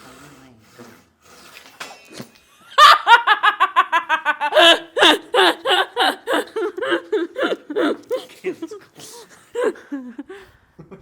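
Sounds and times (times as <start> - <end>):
person laughing hard: 2.8 - 8.8, 9.6 - 11.0.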